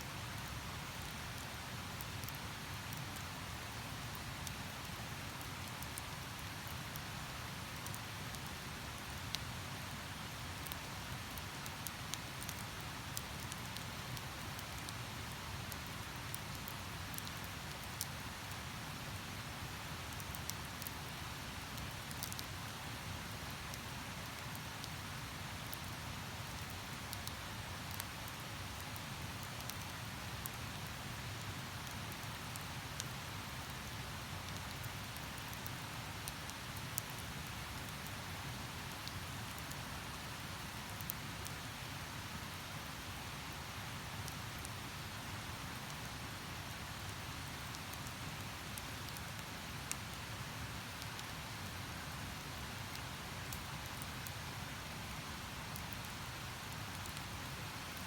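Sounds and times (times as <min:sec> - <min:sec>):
campfire crackling: 0:10.5 - 0:18.7, 0:19.6 - 0:22.7, 0:23.5 - 0:41.2, 0:57.0 - 0:58.0.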